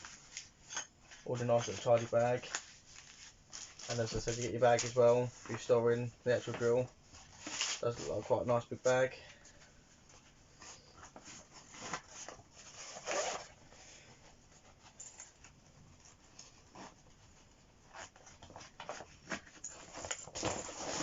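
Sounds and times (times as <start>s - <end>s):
fabric bag rustling and scraping: 10.6s - 13.8s, 17.8s - 21.0s.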